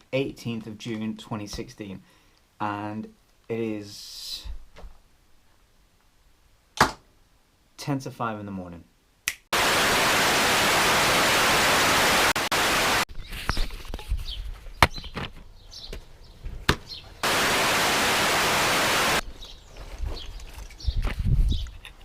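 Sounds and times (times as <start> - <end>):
loud static hiss: 9.5 - 13.1, 17.2 - 19.2.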